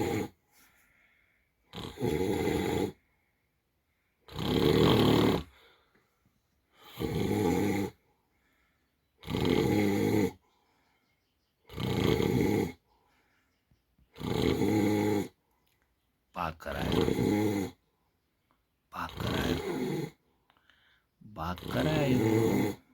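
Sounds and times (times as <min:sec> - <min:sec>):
man snoring: 0:00.0 - 0:00.4, 0:01.7 - 0:03.0, 0:04.2 - 0:05.8, 0:06.8 - 0:08.0, 0:09.2 - 0:10.4, 0:11.7 - 0:12.8, 0:14.1 - 0:15.4, 0:16.4 - 0:17.8, 0:19.0 - 0:20.3, 0:21.3 - 0:22.9
faint breaths: 0:00.0 - 0:11.7, 0:12.4 - 0:14.2, 0:15.1 - 0:22.9.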